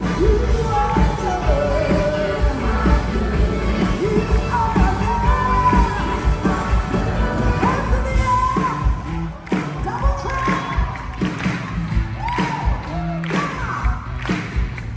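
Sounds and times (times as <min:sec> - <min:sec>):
person singing long notes: 0:00.0 - 0:09.0
band playing worship music: 0:00.0 - 0:13.3
kick-drum beats: 0:00.0 - 0:14.9.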